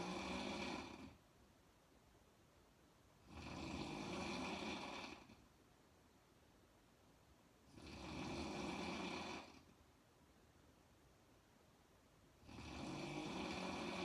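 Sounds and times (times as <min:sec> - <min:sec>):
woman snoring: 0:00.0 - 0:01.2, 0:03.2 - 0:05.4, 0:07.7 - 0:09.7, 0:12.4 - 0:14.0.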